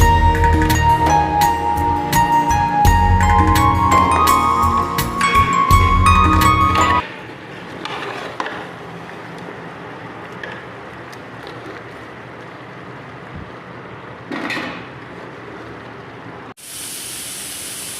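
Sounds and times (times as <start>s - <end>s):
pot hissing on stove: 16.6s - 17.9s.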